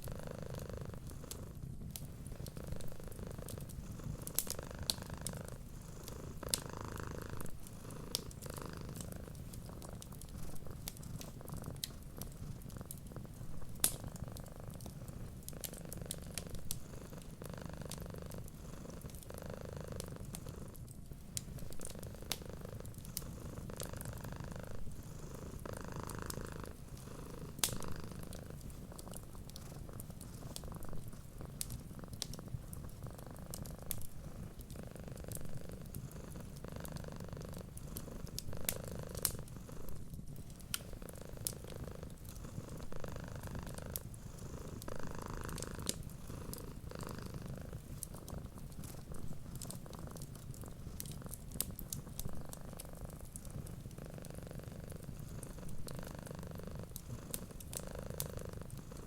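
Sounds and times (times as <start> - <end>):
cat purring: 0.0 - 59.0
wood fire crackling and popping: 0.9 - 59.0.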